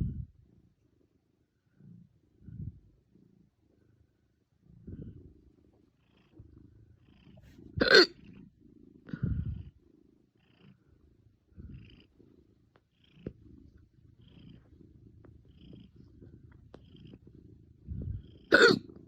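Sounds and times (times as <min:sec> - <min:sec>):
faint low rumble: 0:00.0 - 0:19.0
loud hiccup: 0:07.8 - 0:08.2, 0:18.5 - 0:18.8.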